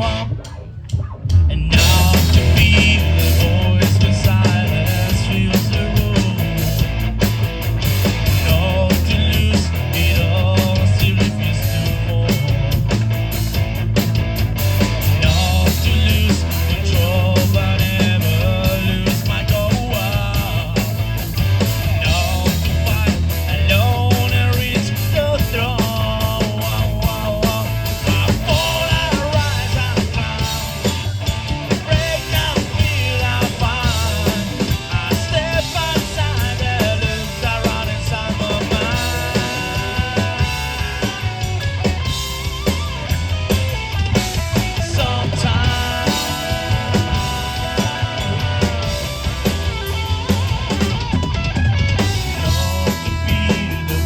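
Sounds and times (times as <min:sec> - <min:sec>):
rock band playing live: 0:00.0 - 0:54.0
steady drum beat: 0:00.0 - 0:54.0
person singing: 0:01.4 - 0:06.6, 0:31.7 - 0:41.6, 0:44.7 - 0:49.5.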